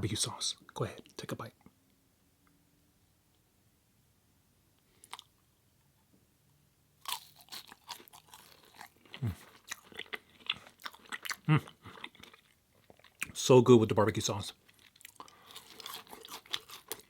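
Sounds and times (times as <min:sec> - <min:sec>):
crunchy food chewing: 0:07.0 - 0:13.3, 0:14.5 - 0:17.0.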